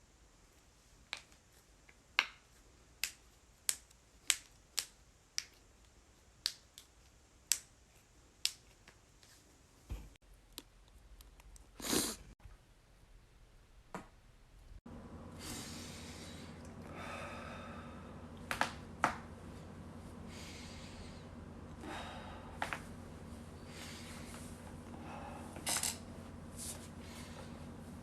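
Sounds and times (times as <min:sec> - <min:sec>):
steady low hum: 0:09.6 - 0:28.0
person breathing: 0:15.3 - 0:18.3, 0:19.6 - 0:26.0, 0:26.6 - 0:28.0.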